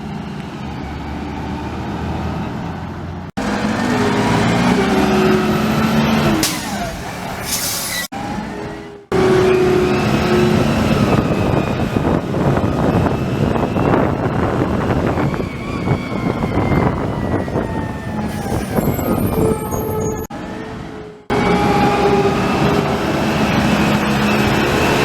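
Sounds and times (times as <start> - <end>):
brake squeal: 3.8 - 12.1, 18.2 - 20.3.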